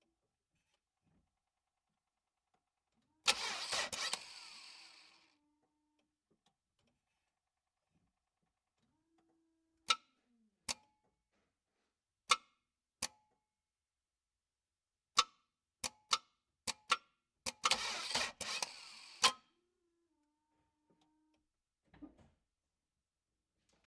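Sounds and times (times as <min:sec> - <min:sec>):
starter cranking: 0:03.2 - 0:05.3, 0:17.5 - 0:19.5.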